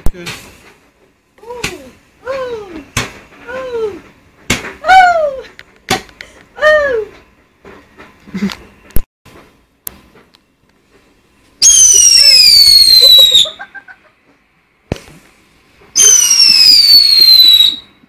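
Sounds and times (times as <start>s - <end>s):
whistling fireworks: 11.6s - 13.8s, 15.9s - 18.0s
sharp firework pops: 14.9s - 15.2s.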